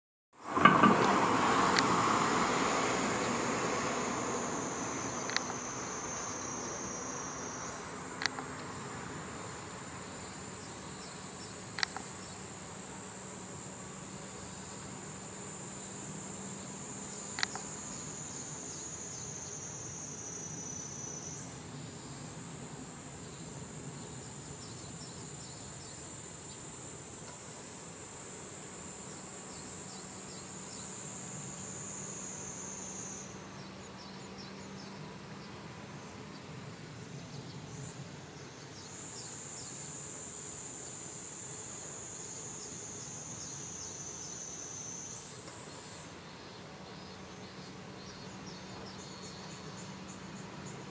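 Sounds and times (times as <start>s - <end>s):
insect high thin song: 1.6s - 50.9s
sharp click: 5.3s - 5.6s, 11.8s - 12.1s.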